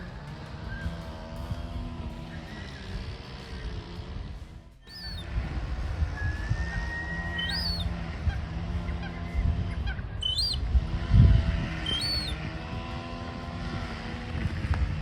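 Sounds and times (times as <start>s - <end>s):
high-pitched chirps: 4.8s - 5.2s, 7.2s - 7.9s, 10.2s - 10.6s, 11.8s - 12.4s
seagull honking calls: 4.8s - 5.3s, 6.0s - 10.6s, 11.8s - 12.4s.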